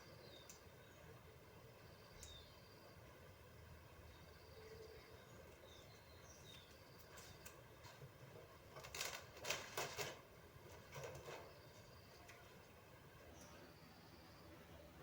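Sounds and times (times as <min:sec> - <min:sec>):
handling rustles and scrapes: 0:08.8 - 0:12.6.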